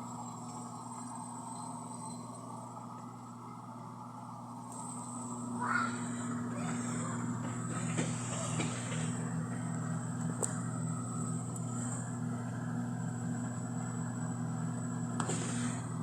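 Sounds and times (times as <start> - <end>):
washing machine spinning: 0.0 - 16.0.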